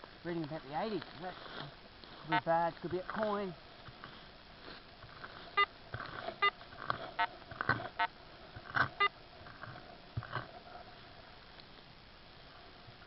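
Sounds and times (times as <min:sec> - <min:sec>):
digging clicks and scrapes in soil: 0:00.0 - 0:11.9
metal detector beeps: 0:02.3 - 0:02.7, 0:05.5 - 0:05.7, 0:08.9 - 0:09.2.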